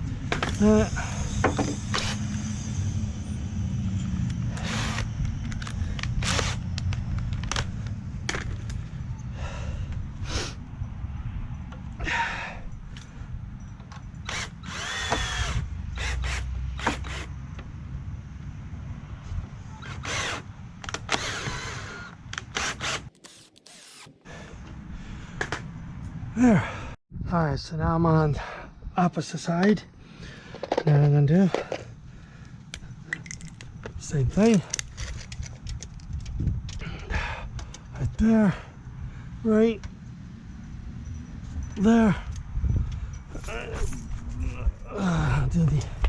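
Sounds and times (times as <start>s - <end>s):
power drill driving into wood: 1.4s - 2.4s, 4.5s - 5.1s, 6.2s - 6.6s, 14.3s - 17.4s, 19.8s - 20.4s, 21.0s - 24.2s.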